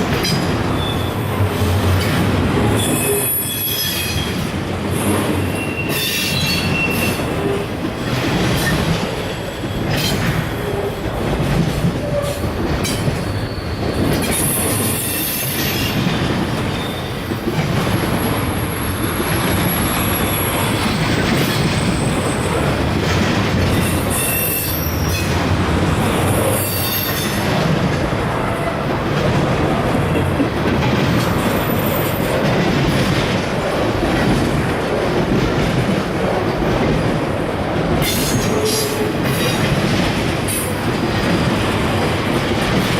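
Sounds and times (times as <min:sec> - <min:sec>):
train wheels rumbling over rails: 0:00.0 - 0:42.9
high-pitched wheel squeals: 0:13.3 - 0:14.2.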